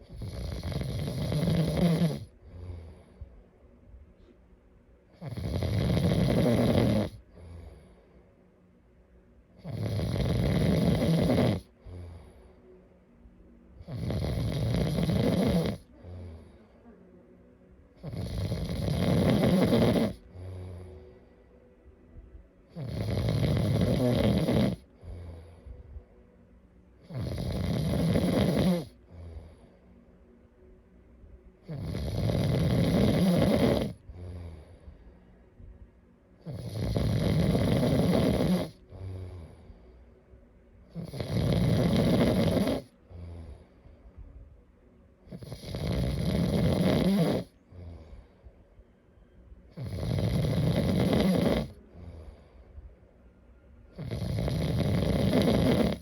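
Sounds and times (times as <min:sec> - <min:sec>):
person snoring: 0:00.0 - 0:03.2, 0:05.2 - 0:08.0, 0:09.6 - 0:12.6, 0:13.8 - 0:16.8, 0:18.0 - 0:21.3, 0:22.7 - 0:25.6, 0:27.0 - 0:29.8, 0:31.6 - 0:34.9, 0:36.4 - 0:39.8, 0:40.9 - 0:43.7, 0:45.3 - 0:48.3, 0:49.7 - 0:52.7, 0:54.0 - 0:56.0
soft breaths: 0:02.2 - 0:05.2, 0:07.2 - 0:09.1, 0:11.6 - 0:23.9, 0:24.8 - 0:27.7, 0:28.9 - 0:32.3, 0:33.9 - 0:37.8, 0:38.4 - 0:41.9, 0:42.5 - 0:45.8, 0:47.4 - 0:50.4, 0:51.7 - 0:54.0.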